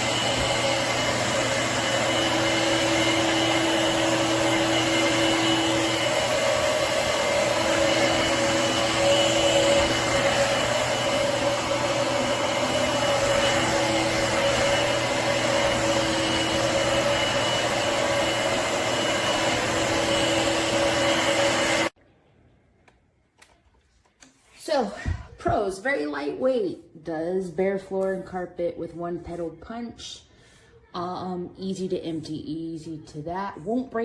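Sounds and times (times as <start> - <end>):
stick vacuum running: 0.0 - 21.9.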